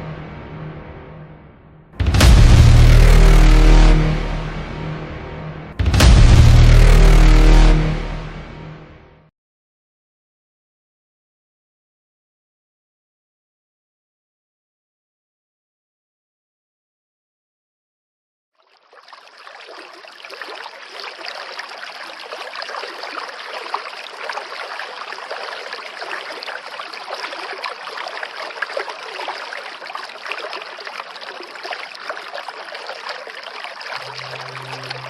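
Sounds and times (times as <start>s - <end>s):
stream water rushing: 18.7s - 35.0s.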